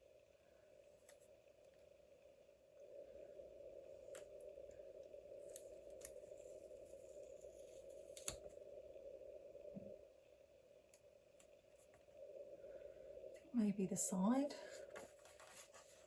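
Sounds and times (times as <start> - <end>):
steady low hum: 0.0 - 16.0
paper and tools clicking and tapping: 14.9 - 16.0.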